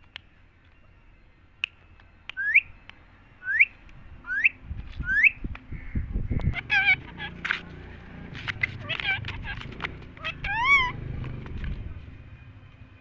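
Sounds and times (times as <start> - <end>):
parrot whistling: 2.4 - 2.7, 3.4 - 5.4.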